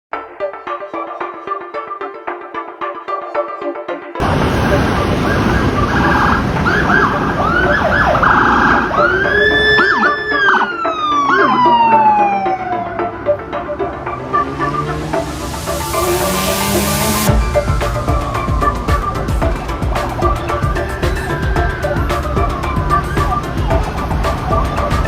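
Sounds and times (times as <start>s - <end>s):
electronic siren whoops and wail: 4.2s - 25.0s
road traffic noise: 4.2s - 25.0s
buzzing horn blasts: 12.8s - 25.0s.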